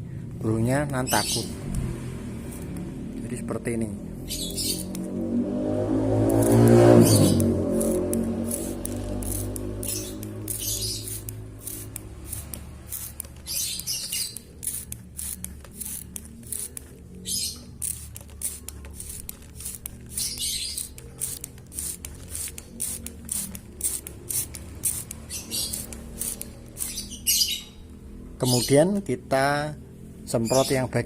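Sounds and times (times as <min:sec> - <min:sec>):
spray bottle hissing: 0:04.6 - 0:05.1, 0:06.2 - 0:27.6.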